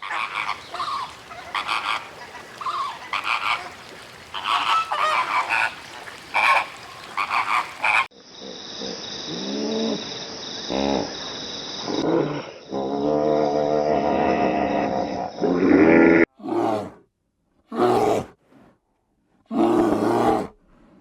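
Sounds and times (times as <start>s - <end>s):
low drawn-out animal calls: 0.0s - 8.1s
short honking calls: 0.0s - 8.1s.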